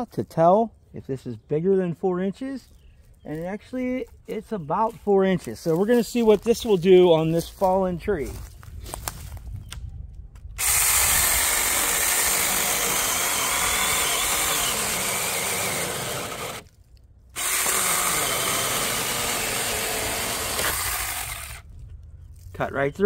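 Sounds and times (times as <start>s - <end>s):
electric chainsaw cutting log: 10.6s - 16.7s, 17.4s - 21.6s.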